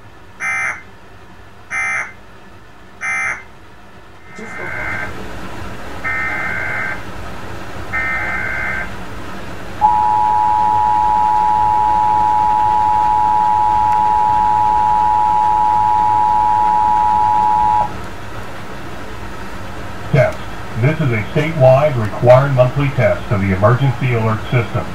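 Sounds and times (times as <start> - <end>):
two-tone attention signal: 9.8 - 17.9.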